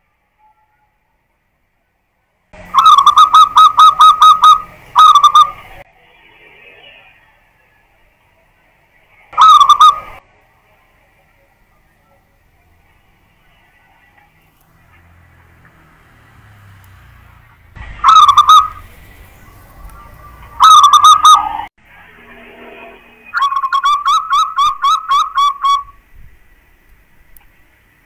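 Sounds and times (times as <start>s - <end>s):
dove cooing: 2.7s - 5.7s, 9.4s - 10.2s, 17.9s - 19.0s, 19.9s - 21.6s.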